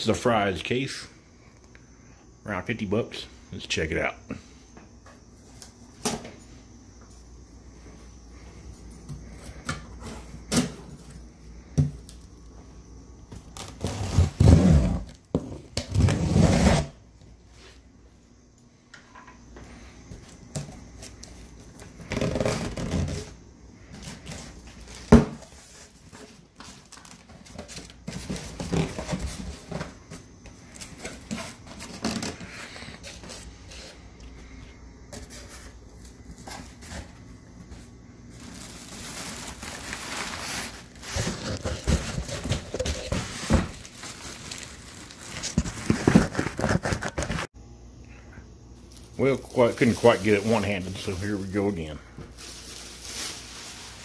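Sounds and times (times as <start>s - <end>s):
cardboard box scraping and rustling: 40.2s - 43.9s.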